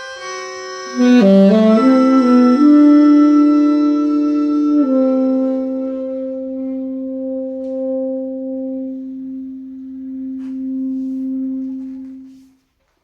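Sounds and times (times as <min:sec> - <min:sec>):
reed instrument note held: 0:00.9 - 0:12.6.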